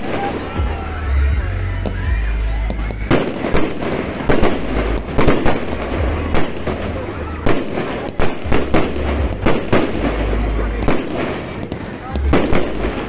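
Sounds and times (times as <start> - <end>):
fireworks bangs: 0.0 - 13.0
continuous low rumble: 3.8 - 13.0.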